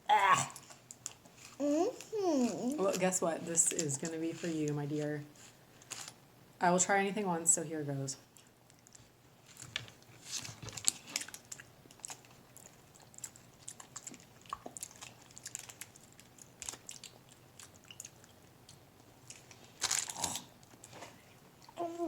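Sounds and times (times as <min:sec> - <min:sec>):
person chewing: 0:11.1 - 0:21.0.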